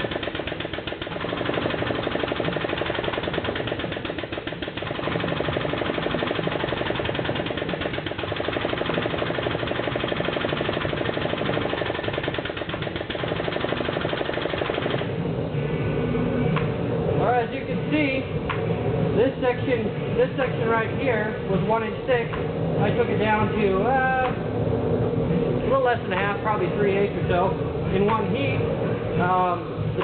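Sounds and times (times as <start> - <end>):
fast pulsing rattle: 0.0 - 15.1.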